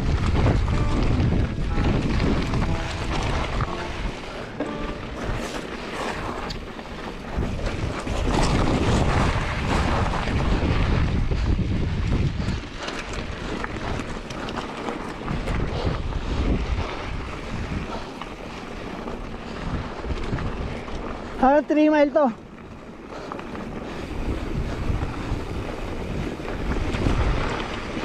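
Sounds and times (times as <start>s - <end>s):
wind buffeting microphone: 0.0s - 28.0s.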